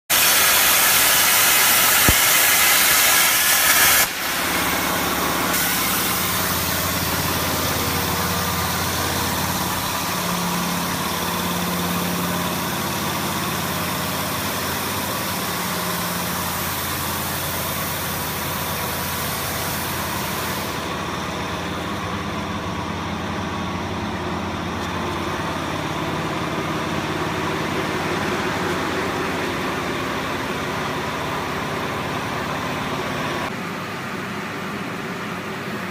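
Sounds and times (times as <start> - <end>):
plasma arc hissing: 0.1 - 21.0
low machine hum: 4.1 - 35.9.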